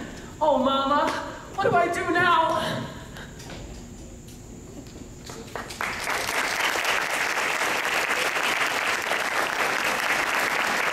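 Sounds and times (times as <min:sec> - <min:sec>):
audience applause: 0:05.3 - 0:10.9.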